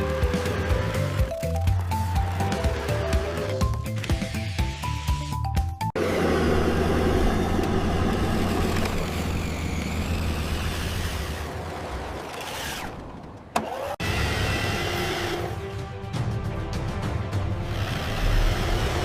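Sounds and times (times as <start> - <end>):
vehicle engine humming: 0.0 - 15.8.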